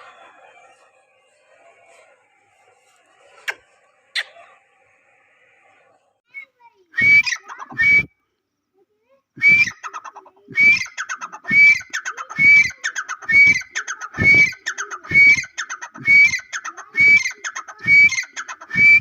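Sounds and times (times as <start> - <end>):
partridge calling: 7.0 - 8.1, 9.4 - 19.0
bird ticking notes: 9.4 - 19.0.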